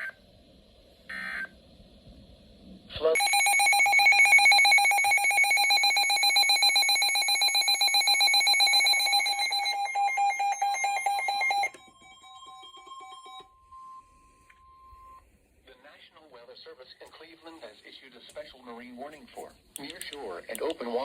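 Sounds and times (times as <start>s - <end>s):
weather radio alarm beeping: 3.2s - 15.2s
faint steady warning tone: 3.2s - 16.0s.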